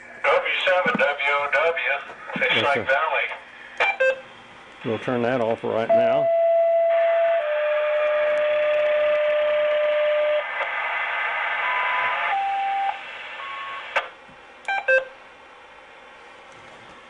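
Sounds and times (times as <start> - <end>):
radio hiss with steady tone: 0.0 - 6.3, 6.9 - 14.2.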